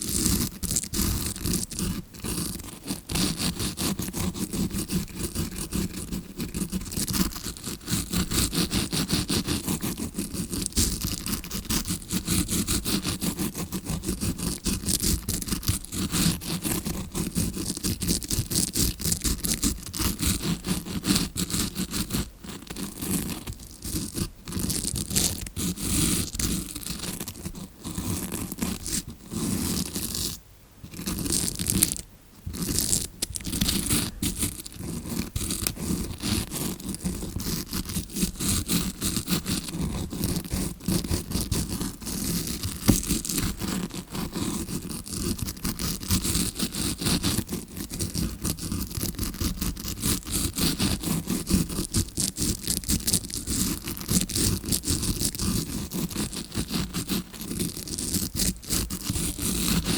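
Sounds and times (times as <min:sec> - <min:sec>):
scrubbing brush scratching microphone: 0:00.0 - 0:59.9.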